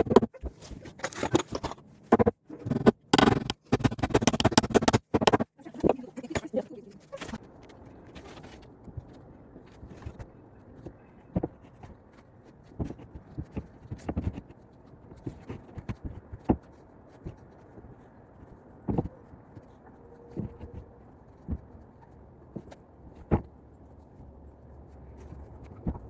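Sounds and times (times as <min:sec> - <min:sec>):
knocks and clunks: 0:02.7 - 0:06.5.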